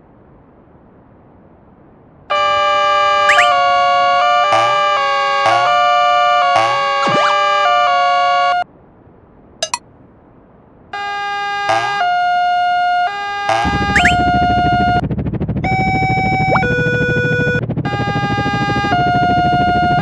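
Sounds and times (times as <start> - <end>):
synthetic level crossing tones: 3.3 - 3.7, 4.5 - 4.8, 13.9 - 14.3.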